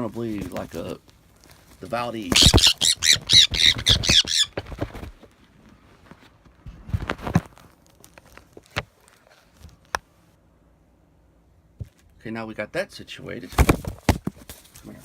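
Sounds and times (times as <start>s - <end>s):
parrot screeching: 2.3s - 4.6s.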